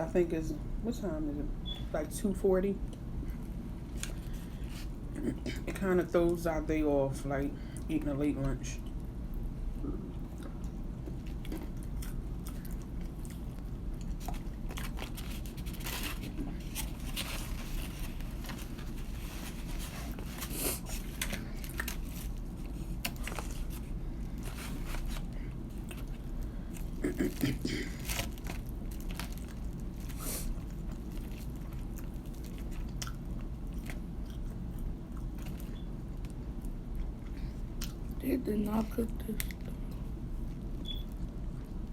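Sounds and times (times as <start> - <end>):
chewing: 9.8 - 38.2
fried chicken crunching: 11.2 - 35.7.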